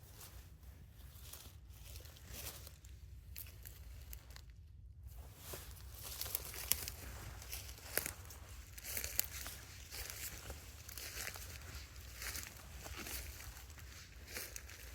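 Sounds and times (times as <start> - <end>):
footsteps crunching through dry leaves: 0.0 - 4.3, 5.3 - 14.9
brushing past twigs: 5.1 - 14.9.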